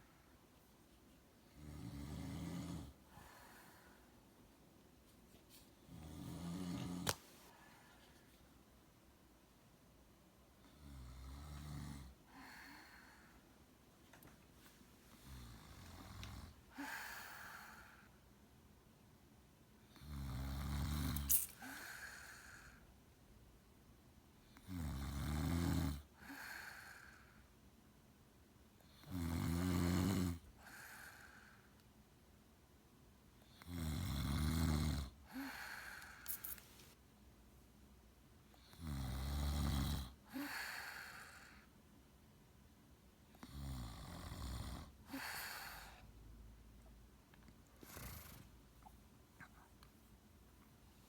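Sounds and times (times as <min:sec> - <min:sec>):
heavy snoring: 0:01.5 - 0:03.0, 0:05.9 - 0:07.0, 0:20.0 - 0:21.8, 0:24.6 - 0:26.1, 0:29.0 - 0:30.4, 0:33.6 - 0:36.4, 0:38.7 - 0:40.5, 0:43.4 - 0:45.3, 0:47.8 - 0:48.5
breathy out-breath: 0:16.7 - 0:18.2.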